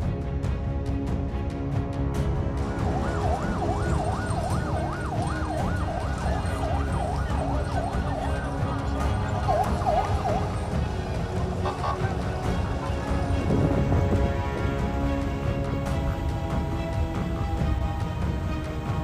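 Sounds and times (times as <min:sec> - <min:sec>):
steady low rumble: 0:00.0 - 0:19.0
emergency siren yelping: 0:02.6 - 0:13.2.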